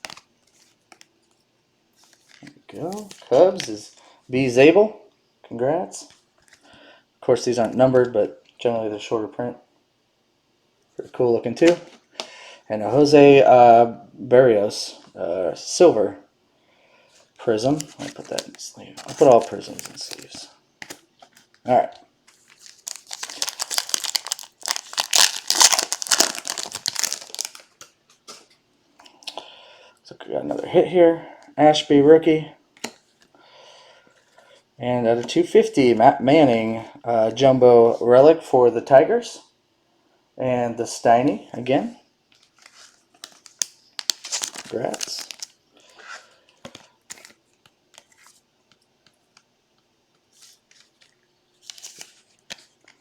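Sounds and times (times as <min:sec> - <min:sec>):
cards and packaging rustling: 0:00.0 - 0:04.1, 0:17.4 - 0:28.6, 0:42.4 - 0:49.2, 0:50.3 - 0:53.0
plastic wrapper crinkling: 0:17.6 - 0:28.5, 0:42.4 - 0:45.6, 0:46.6 - 0:48.4, 0:50.4 - 0:53.0.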